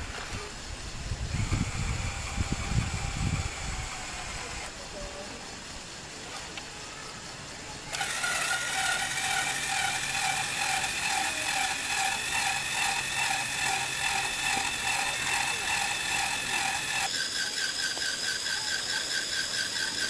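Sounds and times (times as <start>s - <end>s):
motors whirring: 1.2s - 4.8s, 7.8s - 20.0s
plastic gears clicking: 7.9s - 20.0s.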